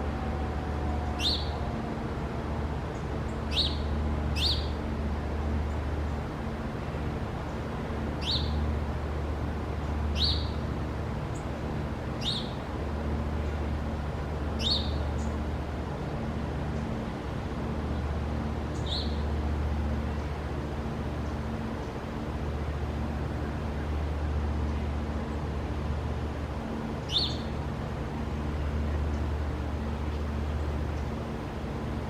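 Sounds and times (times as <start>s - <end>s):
steady low hum: 0.0s - 32.0s
small bird chirping: 8.2s - 8.6s, 10.2s - 10.6s, 12.2s - 12.5s, 14.6s - 15.0s, 18.8s - 19.2s, 27.1s - 27.5s.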